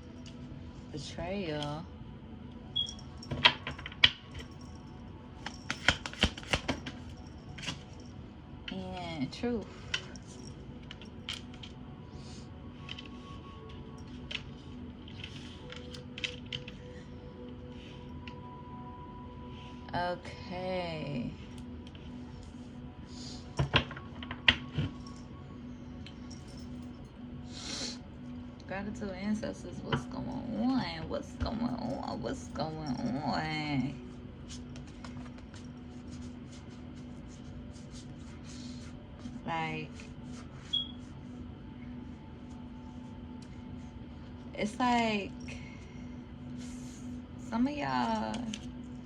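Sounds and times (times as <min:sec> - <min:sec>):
soft background music: 0:00.0 - 0:49.0
cards and objects clicking on table: 0:05.4 - 0:07.9, 0:14.2 - 0:16.8.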